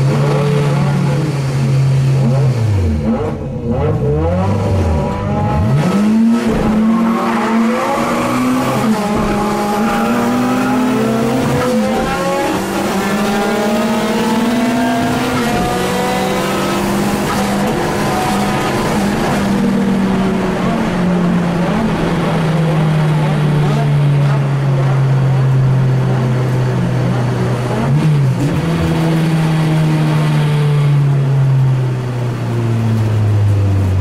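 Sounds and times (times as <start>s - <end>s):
car engine accelerating hard: 0.0s - 34.0s.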